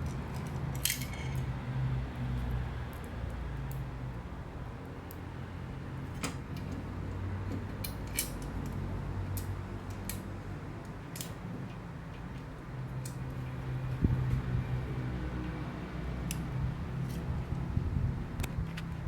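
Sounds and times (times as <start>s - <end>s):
light metal clicks and clinks: 0.1s - 1.5s.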